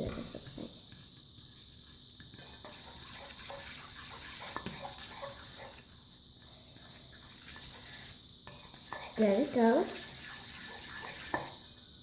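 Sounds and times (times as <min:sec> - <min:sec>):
wet scraping of stirring: 0:00.4 - 0:11.9.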